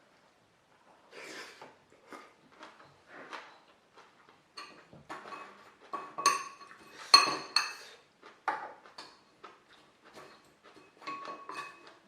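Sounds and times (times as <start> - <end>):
metal cutlery clinking on dishes: 4.6 - 8.0, 10.1 - 12.0.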